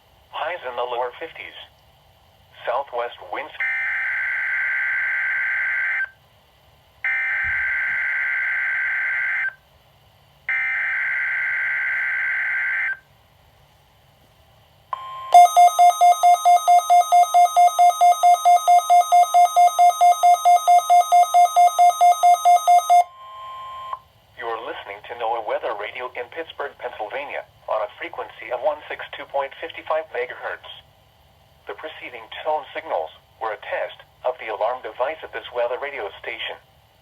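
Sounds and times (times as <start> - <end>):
loud pulsing beep: 15.0 - 24.0
warning alarm tone: 15.0 - 24.0.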